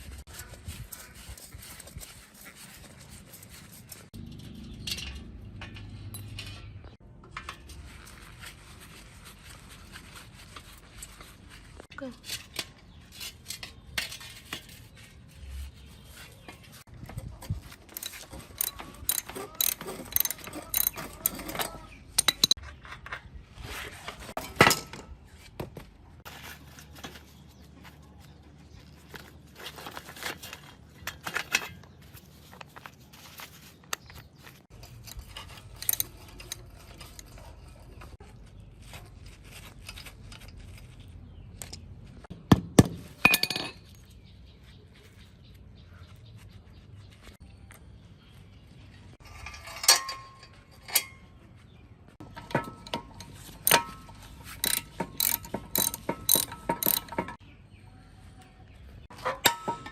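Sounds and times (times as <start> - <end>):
metallic tool clicks and clinks: 17.9 - 22.6, 52.3 - 57.4.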